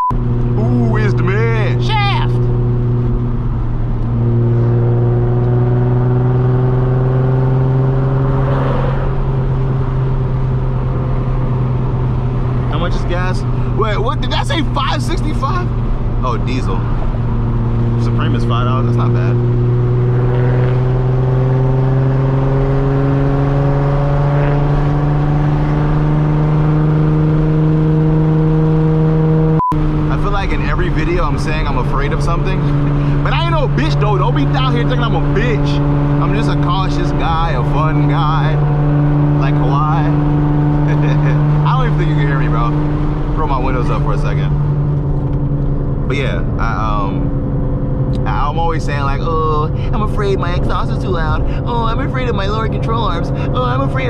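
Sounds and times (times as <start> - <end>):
sports car engine and exhaust: 0.0 - 54.0.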